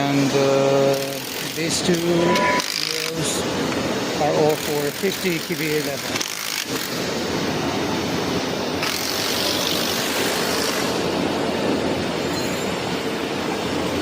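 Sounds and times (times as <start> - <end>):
factory machinery noise: 0.0 - 14.0
hiss: 8.3 - 11.1.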